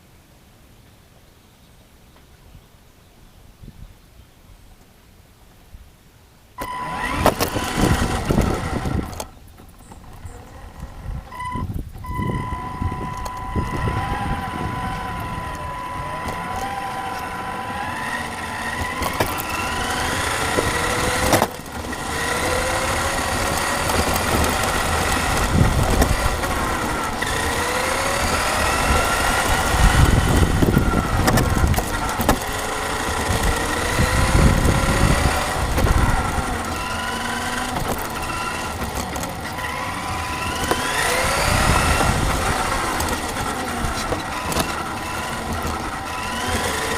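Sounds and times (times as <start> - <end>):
model motor whine: 6.6 - 46.9
steady high tone: 11.3 - 18.8.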